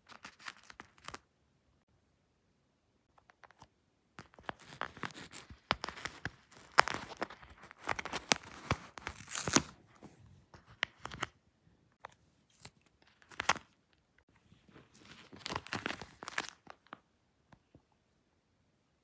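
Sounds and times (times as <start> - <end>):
paper and tape crinkling: 0.0 - 1.2, 4.2 - 9.8, 12.5 - 13.8, 14.7 - 17.0.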